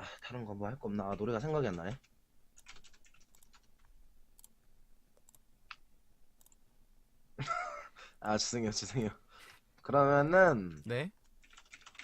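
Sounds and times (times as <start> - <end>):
computer keys clicking: 1.0 - 4.6, 5.2 - 5.8, 6.4 - 6.6, 10.8 - 12.0.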